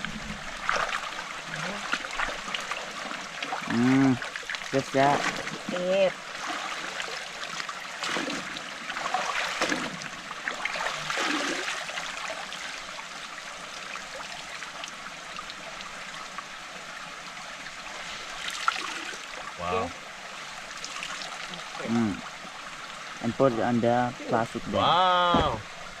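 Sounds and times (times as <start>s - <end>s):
splashing water: 0.0s - 12.9s
stream running: 0.0s - 26.0s.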